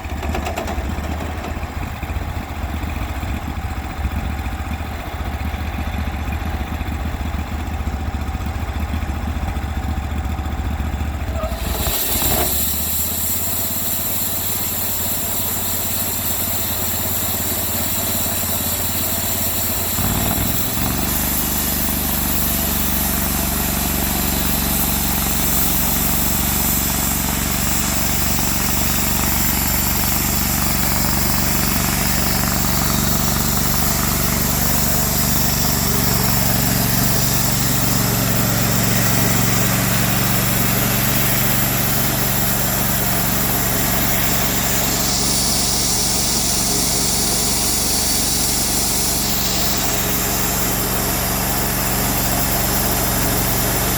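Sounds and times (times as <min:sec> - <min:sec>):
sawmill engine running: 0:00.0 - 0:53.9
strong steady hiss: 0:11.5 - 0:53.8.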